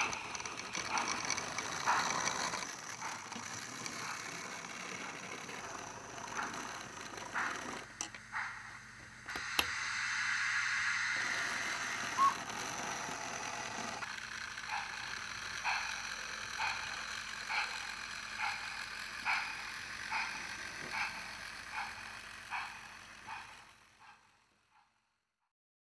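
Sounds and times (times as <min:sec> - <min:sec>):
steam locomotive chuffs: 0:00.0 - 0:25.0
steam hiss: 0:08.3 - 0:12.3.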